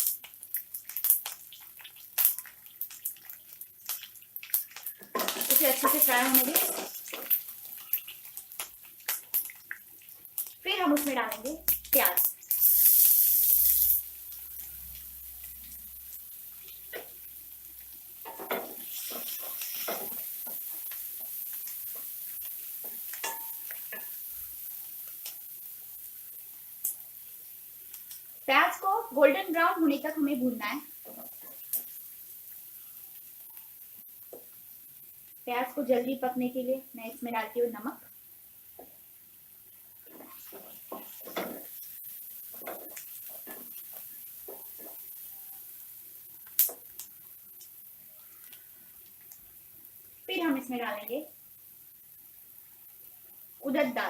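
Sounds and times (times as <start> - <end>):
hot oil crackling and spitting: 0.0 - 54.0
spatula scraping a pan: 18.3 - 20.9, 40.1 - 41.8.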